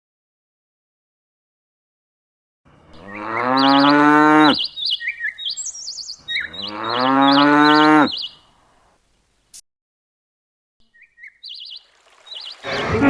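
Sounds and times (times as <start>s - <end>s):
cow mooing: 2.7s - 4.7s, 6.3s - 8.4s, 12.6s - 13.0s
birds chirping and trilling: 2.8s - 8.6s, 10.9s - 13.0s.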